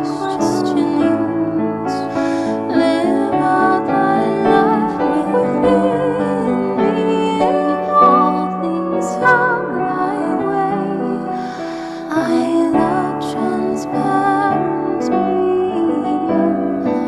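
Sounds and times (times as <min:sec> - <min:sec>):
piano accompaniment: 0:00.0 - 0:17.0
two voices singing a hymn: 0:00.0 - 0:17.0.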